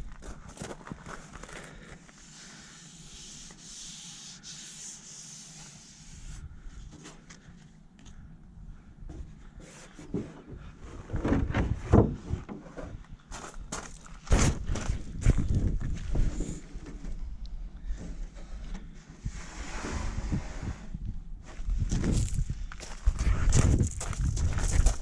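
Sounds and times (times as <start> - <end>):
sandpaper rubbing on a hull: 2.2 - 6.4.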